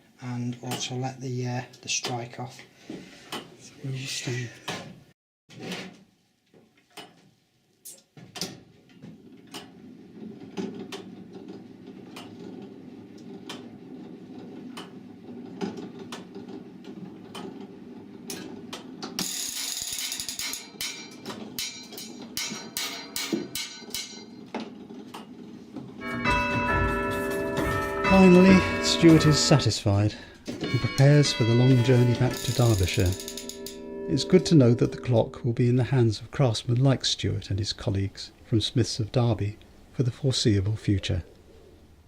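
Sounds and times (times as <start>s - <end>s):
clock mechanism drone with clicks: 10.9s - 13.8s, 14.6s - 15.0s, 30.7s - 35.2s
clatter of gears and ratchets: 19.2s - 21.0s.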